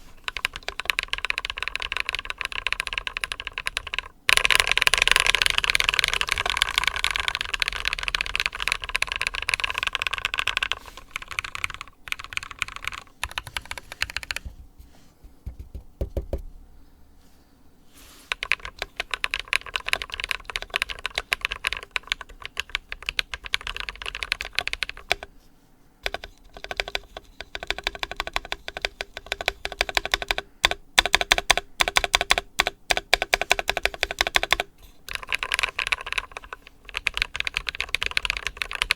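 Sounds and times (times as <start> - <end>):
mechanical keyboard typing: 0.0 - 14.6, 18.3 - 25.3, 26.0 - 38.9.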